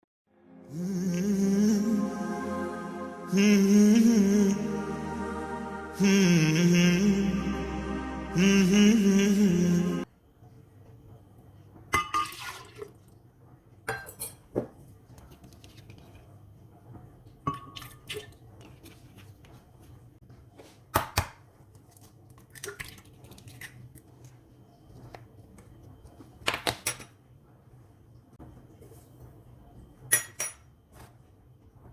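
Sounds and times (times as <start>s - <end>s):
dishes and glassware clinking: 12.0s - 12.7s, 13.9s - 14.7s, 17.5s - 18.2s, 30.1s - 30.7s
liquid pouring and dripping: 12.2s - 13.3s.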